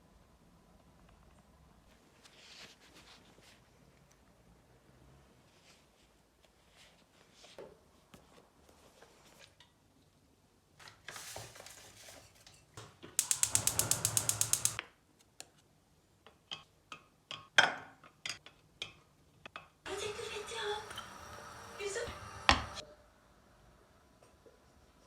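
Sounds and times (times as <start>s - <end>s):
rapid mechanical clicks: 13.2s - 14.8s
scattered clicks and knocks: 13.2s - 14.8s.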